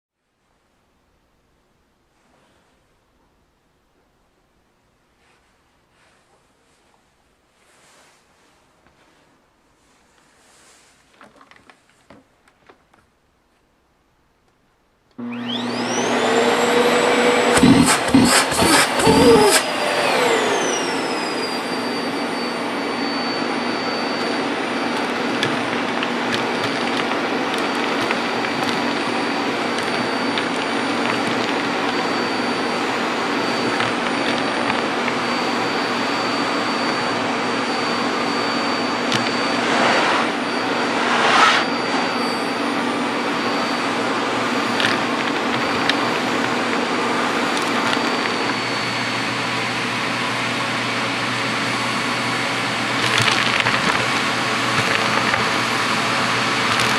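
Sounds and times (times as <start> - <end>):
vacuum cleaner running: 15.2 - 56.9
object sucked up hose: 38.4 - 43.2.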